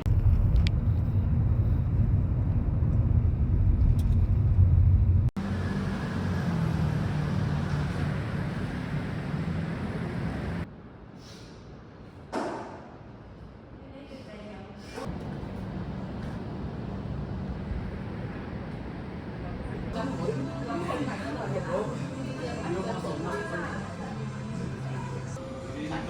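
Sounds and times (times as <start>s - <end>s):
heavy vehicle rumble: 0.0s - 10.7s.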